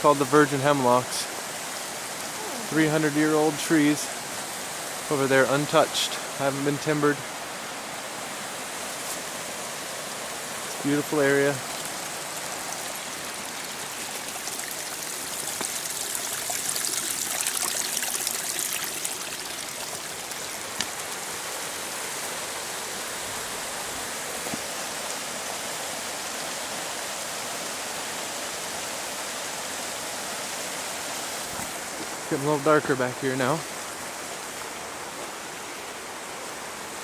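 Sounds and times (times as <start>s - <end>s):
stream rushing: 0.0s - 37.0s.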